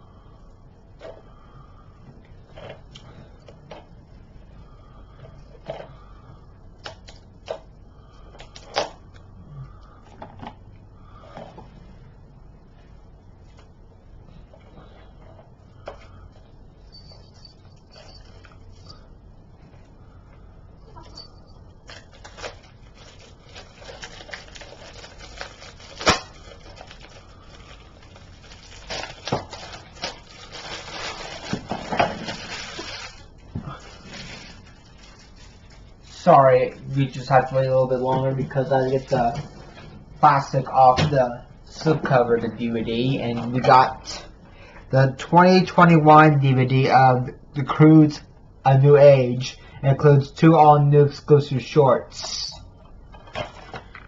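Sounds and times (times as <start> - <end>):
plastic wrap crinkling and clicking: 21.8 - 36.1.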